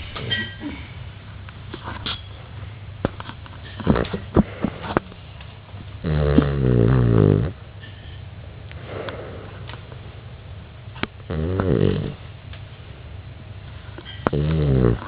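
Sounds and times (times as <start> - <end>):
dog snoring: 6.0 - 7.6, 11.1 - 12.2, 14.2 - 15.0.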